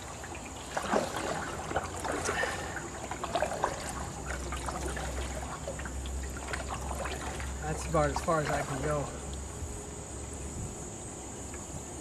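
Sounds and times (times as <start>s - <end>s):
paddle splashing water: 0.0s - 9.4s
water trickling and dripping: 0.0s - 10.6s
low steady rumble: 0.0s - 12.0s.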